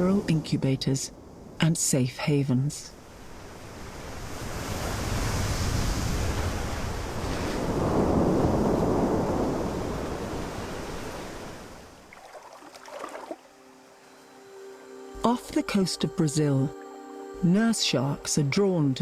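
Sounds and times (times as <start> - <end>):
sea waves surging over rocks: 3.0 - 13.6.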